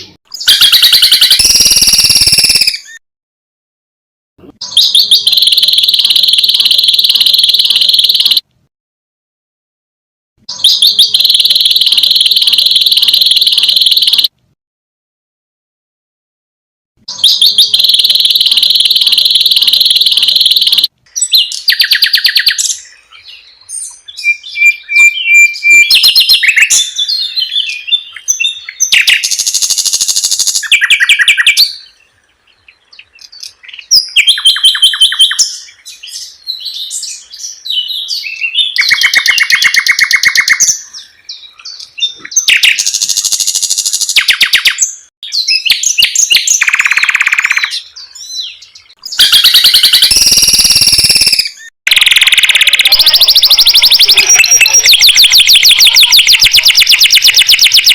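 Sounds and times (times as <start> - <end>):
songbird fast trills: 0.4 - 3.0, 10.6 - 14.3, 17.2 - 22.7, 49.1 - 57.9.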